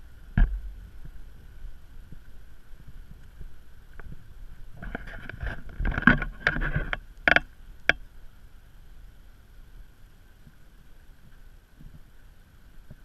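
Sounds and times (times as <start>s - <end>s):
boat engine low rumble: 0.0s - 13.0s
thin steady whine: 0.0s - 13.0s.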